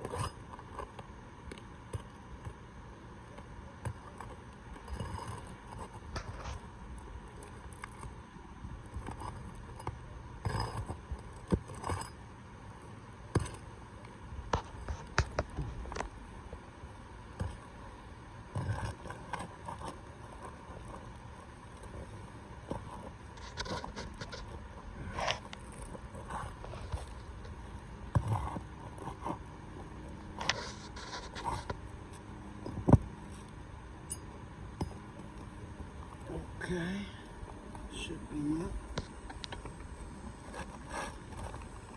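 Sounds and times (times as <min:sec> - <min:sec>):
tool scraping shingles: 0:18.5 - 0:33.5.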